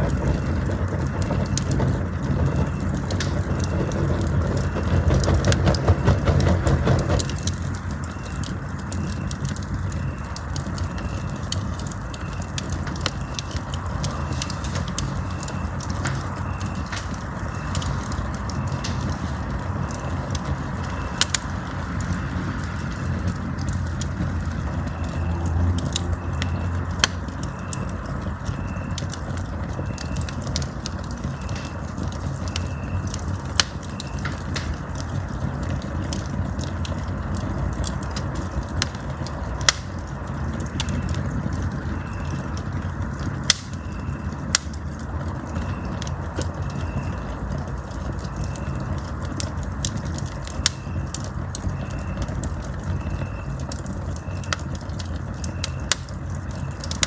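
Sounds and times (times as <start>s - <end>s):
campfire crackling and popping: 0.0s - 57.0s
low rush of flame: 0.0s - 57.0s.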